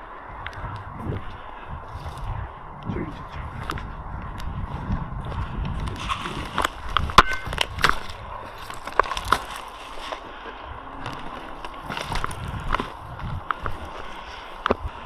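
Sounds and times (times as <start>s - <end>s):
footsteps crunching over twigs: 4.7s - 14.8s
twigs snapping and clicking: 5.9s - 10.3s.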